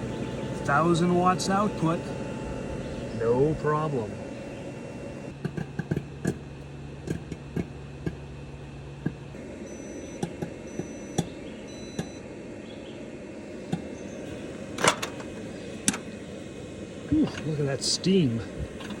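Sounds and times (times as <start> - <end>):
microwave oven humming: 0.0 - 19.0
popcorn popping: 5.3 - 8.3, 9.0 - 9.3, 10.1 - 12.2.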